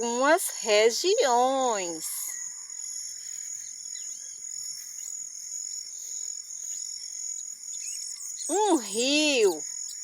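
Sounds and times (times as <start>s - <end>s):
insects trilling: 0.0s - 10.0s.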